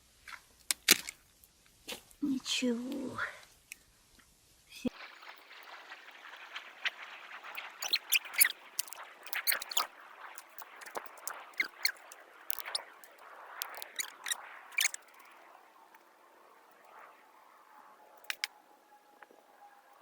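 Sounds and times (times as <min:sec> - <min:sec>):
campfire crackling and popping: 0:04.9 - 0:18.6
squeaky whistles from wet wood: 0:07.5 - 0:15.4.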